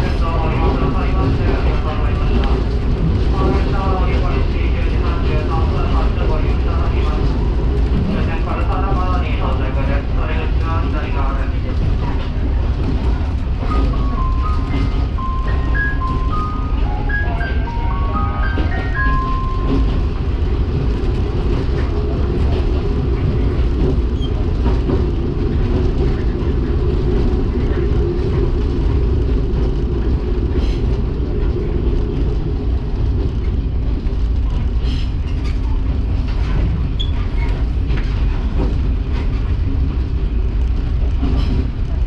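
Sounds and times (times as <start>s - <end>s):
railcar engine and running-gear rumble: 0.0s - 42.0s.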